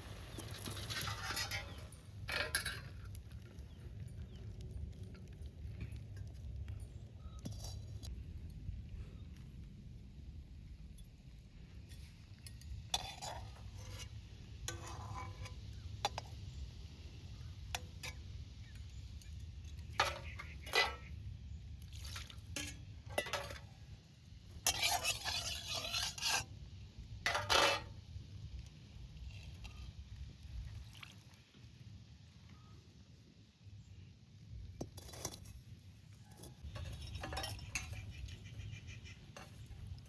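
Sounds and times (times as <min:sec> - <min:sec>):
metal utensil scraping in pot: 0:00.6 - 0:03.0, 0:12.0 - 0:16.4, 0:19.8 - 0:21.2, 0:22.5 - 0:23.7, 0:24.5 - 0:26.5, 0:27.3 - 0:27.9, 0:36.2 - 0:40.0.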